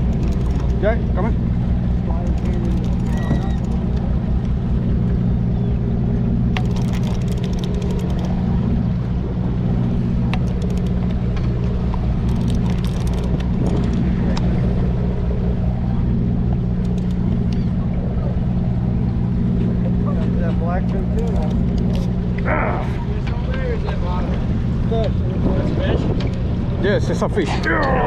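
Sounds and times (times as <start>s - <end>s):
sharp clicks and knocks: 0.0s - 1.3s, 2.0s - 4.6s, 6.5s - 8.6s, 10.2s - 14.5s, 16.8s - 17.6s, 21.0s - 22.2s
boat engine droning: 0.0s - 28.0s.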